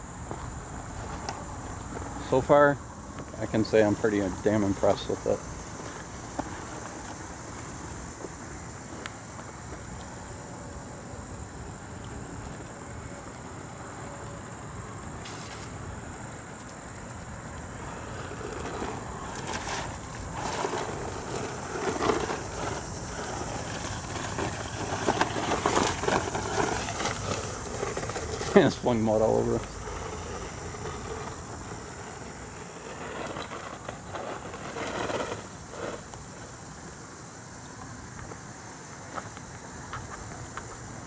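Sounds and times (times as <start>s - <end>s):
toy truck churning through mud: 17.8s - 36.1s.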